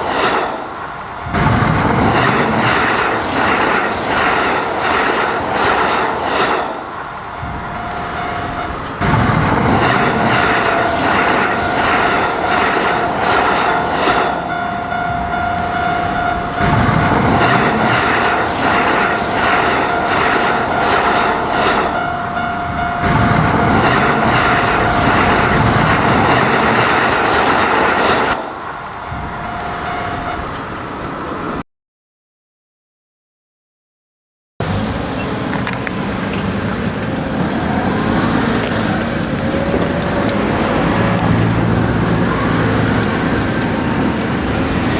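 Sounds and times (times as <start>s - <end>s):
train wheels clattering on rails: 0.0s - 31.5s, 34.6s - 44.9s
steady whine: 1.0s - 28.8s.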